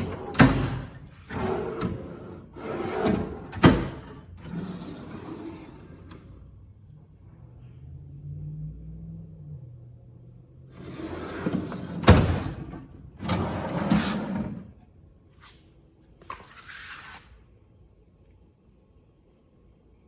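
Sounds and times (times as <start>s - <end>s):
drawer shutting clack: 0.0s - 2.1s, 2.8s - 4.2s, 11.4s - 14.7s
metal drawers sliding on runners: 0.0s - 6.4s, 10.8s - 14.8s.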